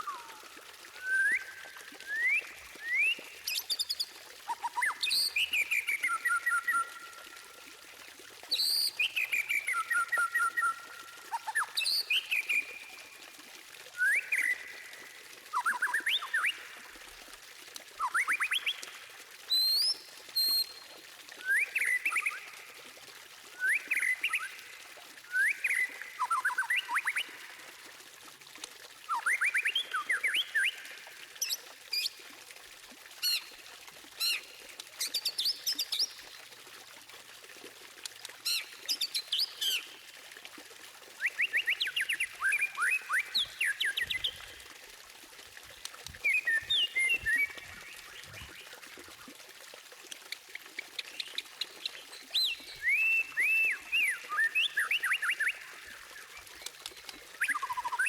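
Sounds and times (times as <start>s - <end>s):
bird singing whistled phrases: 1.0s - 3.2s, 14.0s - 14.8s, 15.5s - 16.6s, 21.4s - 22.4s, 23.6s - 24.5s, 25.3s - 27.3s, 29.1s - 30.8s, 46.2s - 48.4s, 52.3s - 56.0s, 57.0s - 58.0s.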